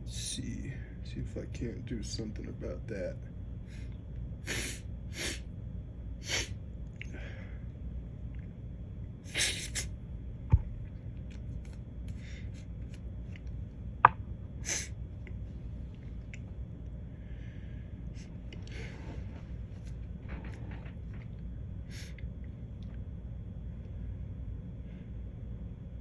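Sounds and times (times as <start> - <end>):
man sniffing and gasping: 4.5 - 5.4, 9.3 - 9.9, 14.7 - 14.9.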